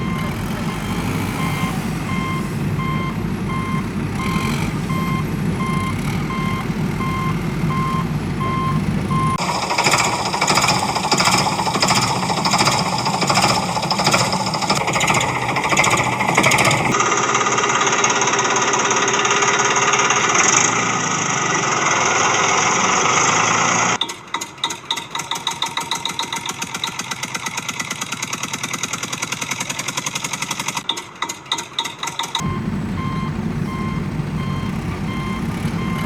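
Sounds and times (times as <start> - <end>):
engine chugging: 0.0 - 24.0, 24.6 - 36.0
steady dense engine roar: 0.0 - 24.0, 32.4 - 36.0
rattling engine noise: 0.0 - 36.0.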